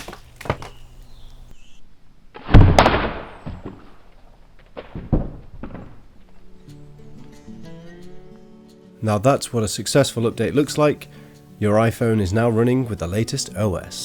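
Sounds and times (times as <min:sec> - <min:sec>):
heavy thud with rattling decay: 0:02.4 - 0:06.3.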